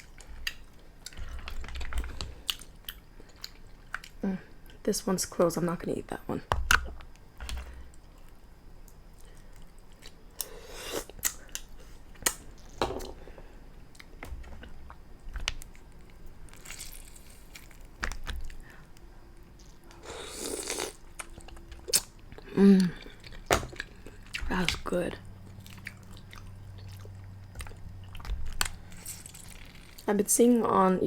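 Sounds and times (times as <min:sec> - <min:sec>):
chewing and mouth smacking: 0:13.9 - 0:24.8, 0:25.4 - 0:30.1.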